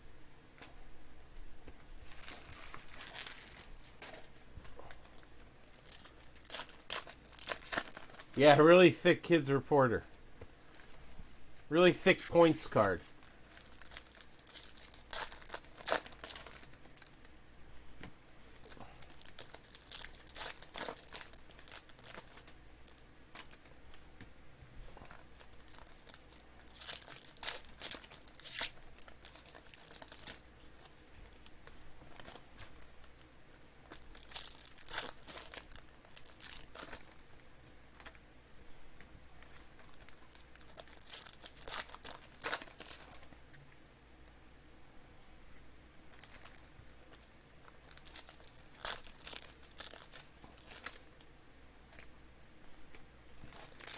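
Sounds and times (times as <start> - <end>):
rustle of cards handled: 1.6 - 17.2, 52.9 - 53.9
card wrappers tearing and crinkling: 2.0 - 9.9, 11.8 - 17.2, 18.6 - 23.8, 25.0 - 33.2, 33.8 - 38.2, 39.8 - 43.3, 46.1 - 51.1, 53.4 - 53.9.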